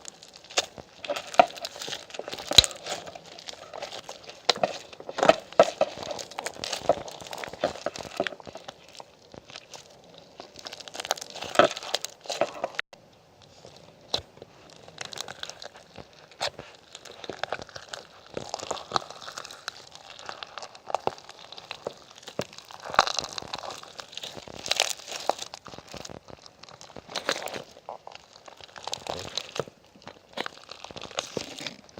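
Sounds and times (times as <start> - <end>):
crinkling and crunching: 0.0 - 31.9.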